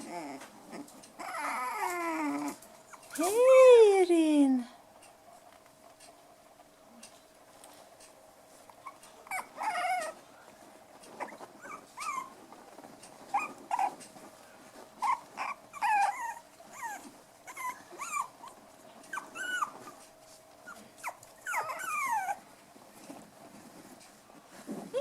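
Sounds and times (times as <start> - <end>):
puppies yipping and squealing: 0.0 - 3.2, 8.8 - 10.2, 11.1 - 12.4, 13.2 - 14.1, 15.0 - 22.5.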